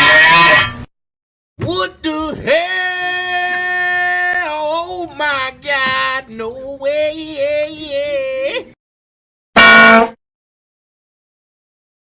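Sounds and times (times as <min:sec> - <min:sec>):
loud blaring tone: 0:09.6 - 0:10.2.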